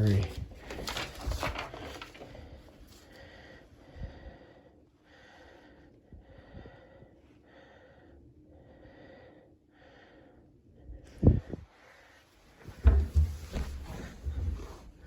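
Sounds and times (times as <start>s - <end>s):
faint close breathing: 2.2s - 12.4s.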